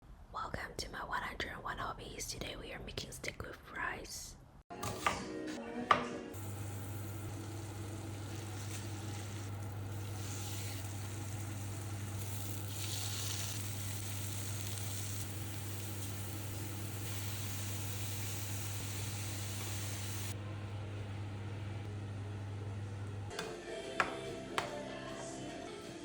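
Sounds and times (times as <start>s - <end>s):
food sizzling in a pan: 6.4s - 20.4s.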